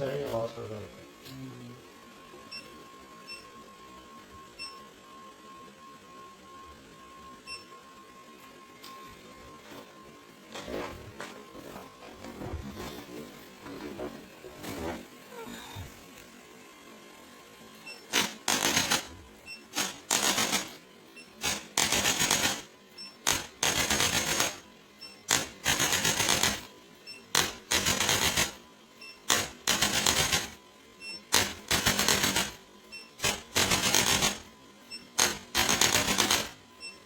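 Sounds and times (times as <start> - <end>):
mechanical device clicking and clattering: 31.4 - 32.6.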